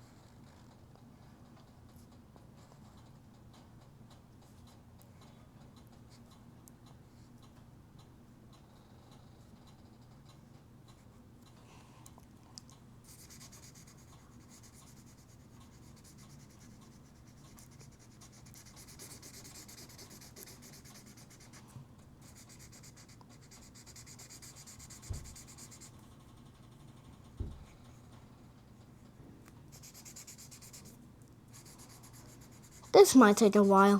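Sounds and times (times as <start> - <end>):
scribbling on paper: 13.1 - 27.2, 29.7 - 33.7
soft bump: 27.4 - 27.7.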